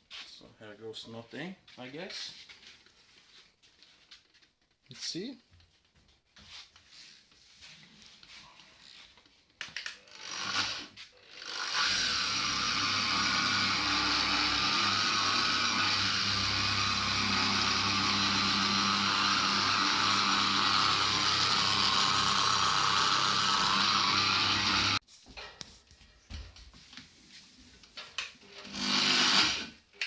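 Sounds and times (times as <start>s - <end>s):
electric polisher running: 10.2s - 25.0s, 28.6s - 29.7s.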